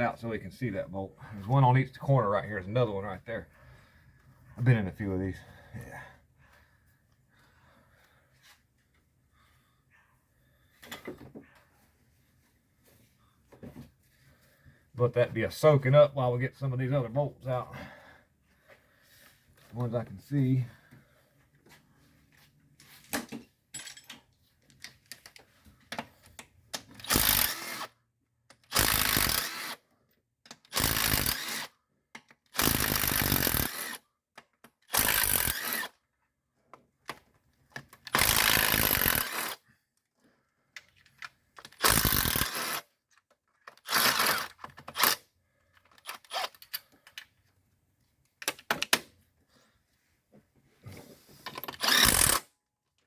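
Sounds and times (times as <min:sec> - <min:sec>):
cordless impact wrench bursts: 0:27.0 - 0:27.9, 0:28.6 - 0:29.8, 0:30.6 - 0:31.8, 0:32.5 - 0:34.0, 0:34.9 - 0:36.0, 0:38.1 - 0:39.6, 0:41.6 - 0:42.9, 0:43.8 - 0:45.3, 0:46.0 - 0:46.6, 0:51.5 - 0:52.5.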